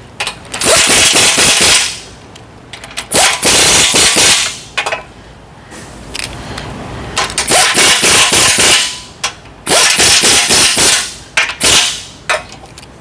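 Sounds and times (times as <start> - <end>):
impact wrench rattling: 7.2 - 12.7.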